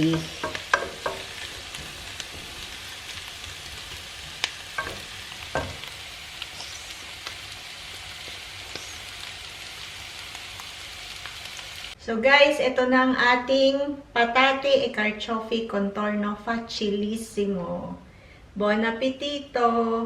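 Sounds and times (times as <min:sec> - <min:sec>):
utensil knocking a pan: 0:00.0 - 0:02.7, 0:04.2 - 0:05.9
vegetables sizzling in a pan: 0:00.0 - 0:12.0.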